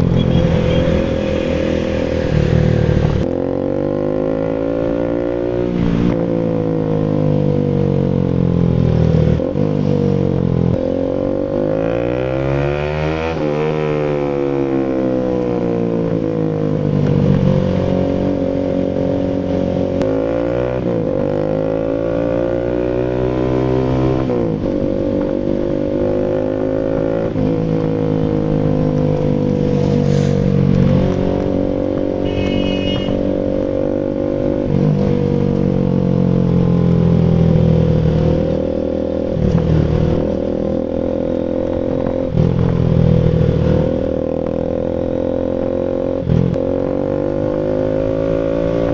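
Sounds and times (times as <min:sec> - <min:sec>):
motorcycle engine revving: 0:00.0 - 0:06.8, 0:16.8 - 0:48.9.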